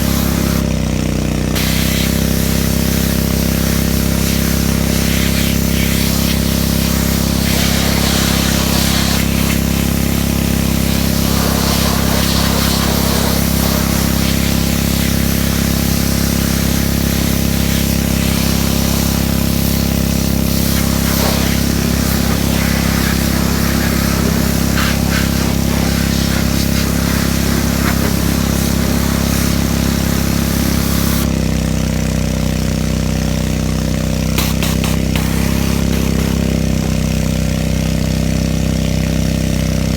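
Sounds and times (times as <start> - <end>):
water spray hissing: 0.0 - 0.7, 1.6 - 31.3, 34.4 - 37.3
pressure washer engine running: 0.0 - 39.9.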